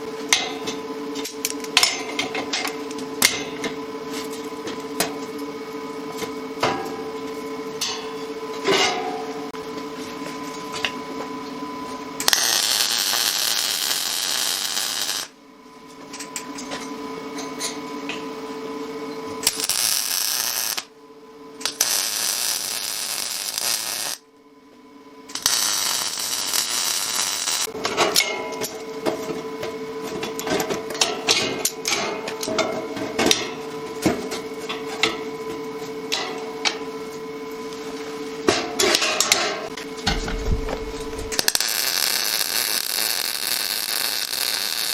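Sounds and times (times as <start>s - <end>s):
welding arc crackle: 12.2s - 15.3s, 19.4s - 20.9s, 21.6s - 24.2s, 25.3s - 27.8s, 40.1s - 44.9s
steady hum: 40.0s - 44.9s.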